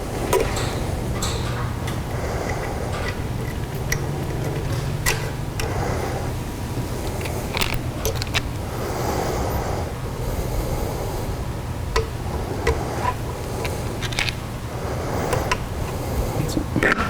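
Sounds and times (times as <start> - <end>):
steady low hum: 0.0 - 17.0
small metal clicks and taps: 0.3 - 5.8.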